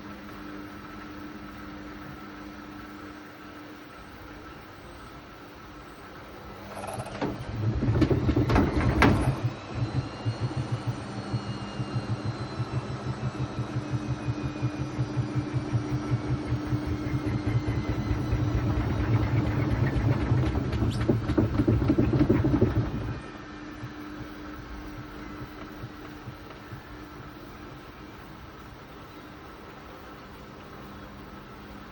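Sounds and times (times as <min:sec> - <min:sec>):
thin motor whine: 0:00.0 - 0:31.9
washing machine drum thumping: 0:06.8 - 0:13.3, 0:14.0 - 0:23.2, 0:23.8 - 0:27.6.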